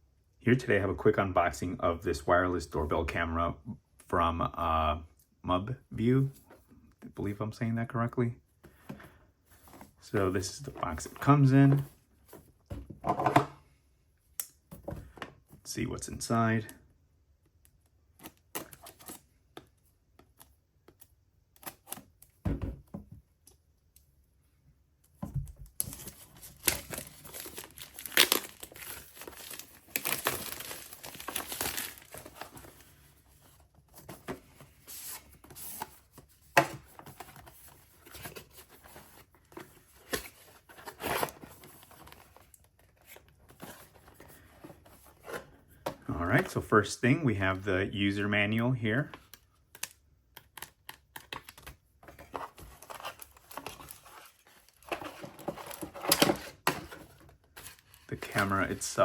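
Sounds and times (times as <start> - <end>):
packaging being torn and crinkled: 25.8 - 32.2.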